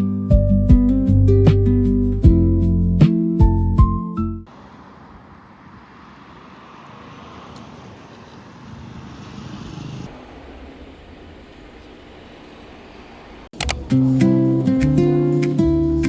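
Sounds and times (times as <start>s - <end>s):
vehicle going by: 4.5s - 14.2s.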